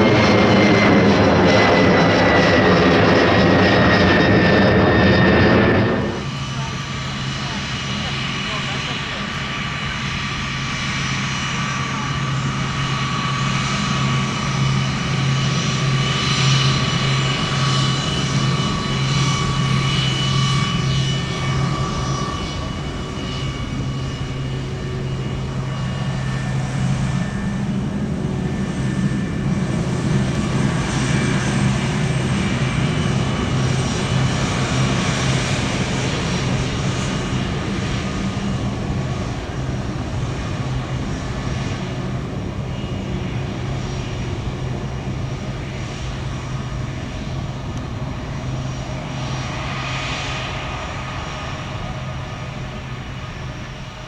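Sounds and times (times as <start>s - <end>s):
jet engines humming and whining: 0.0s - 54.0s.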